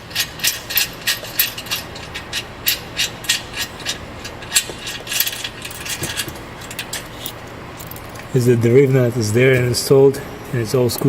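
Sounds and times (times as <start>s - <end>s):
hand ratchet clicking: 0.0s - 8.0s.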